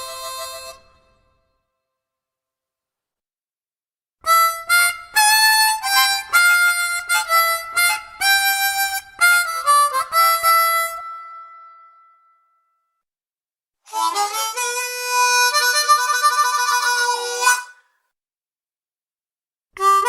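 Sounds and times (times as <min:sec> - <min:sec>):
harmonica riff: 0:00.0 - 0:01.4, 0:04.3 - 0:12.0, 0:13.9 - 0:17.8, 0:19.8 - 0:20.0.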